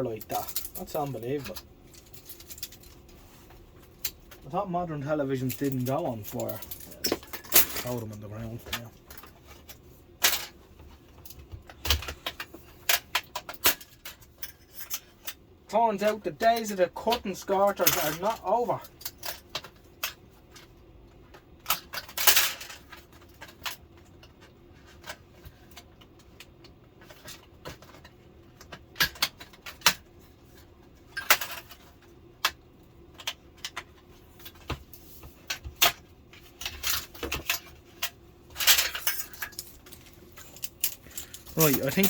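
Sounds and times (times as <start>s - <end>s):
television parts clicking and rattling: 0.0s - 42.0s.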